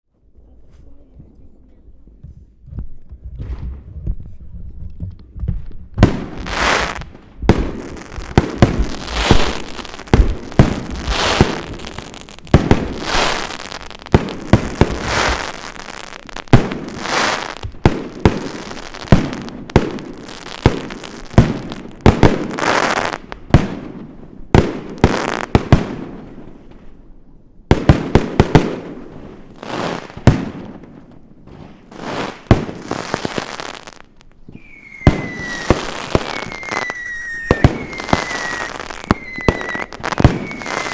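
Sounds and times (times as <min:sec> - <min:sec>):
high falling firework whistle: 0:34.5 - 0:40.9.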